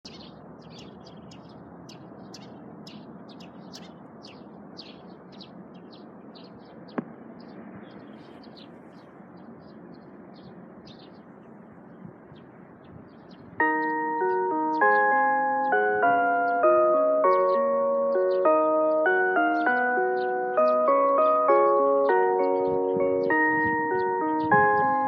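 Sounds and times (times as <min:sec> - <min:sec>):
small birds chirping: 0:00.0 - 0:25.0
steady background noise: 0:00.1 - 0:13.6.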